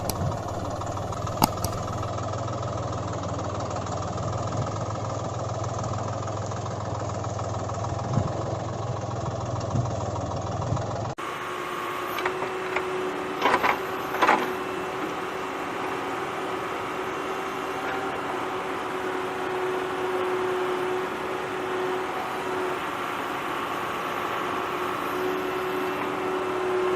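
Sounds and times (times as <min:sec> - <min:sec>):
sharp clicks: 0:00.0 - 0:00.3, 0:01.2 - 0:02.0
tractor engine running: 0:00.0 - 0:26.9.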